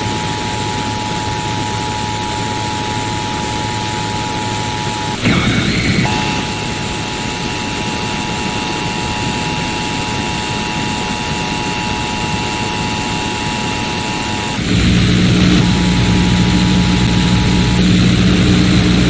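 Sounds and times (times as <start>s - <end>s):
two-tone alarm over radio: 0.7s - 18.7s
static hiss: 4.9s - 7.4s, 14.6s - 19.0s.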